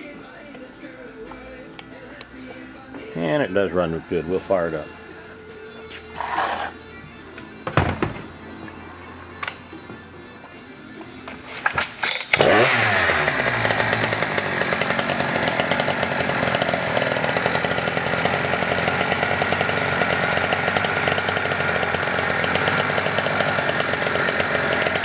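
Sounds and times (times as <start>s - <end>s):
chainsaw engine running: 6.2s - 6.8s, 11.7s - 25.0s
starter cord pulls: 11.3s - 25.0s.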